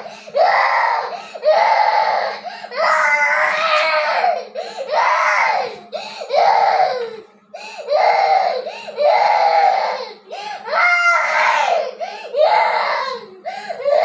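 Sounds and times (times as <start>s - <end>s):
gasping breaths: 2.3s - 2.8s, 13.2s - 13.8s.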